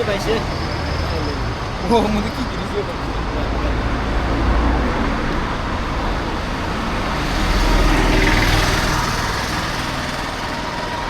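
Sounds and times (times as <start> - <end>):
traffic and wind rush: 0.0 - 11.0.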